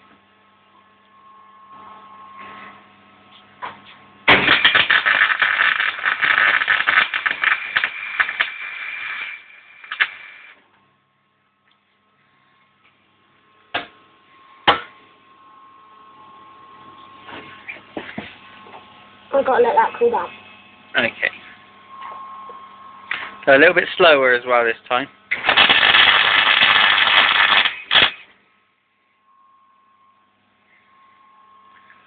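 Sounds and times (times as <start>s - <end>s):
welder arc crackling: 4.3s - 10.6s, 25.3s - 28.3s.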